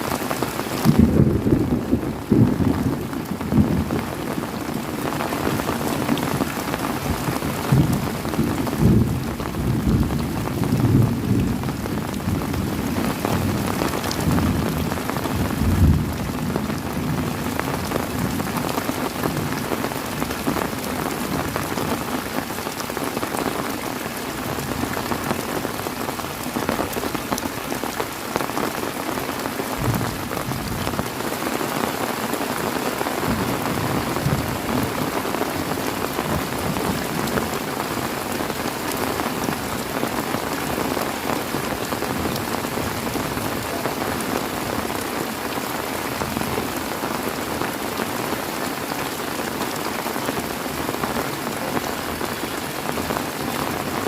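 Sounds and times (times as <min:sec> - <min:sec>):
heavy rain falling: 0:00.0 - 0:54.0
thunder rumbling: 0:00.9 - 0:04.2, 0:07.1 - 0:18.7.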